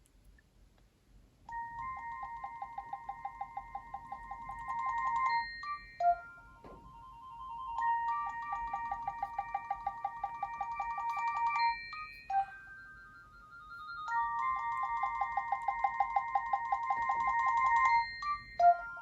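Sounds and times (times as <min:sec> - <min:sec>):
electronic ringtone tune: 0:01.5 - 0:19.0.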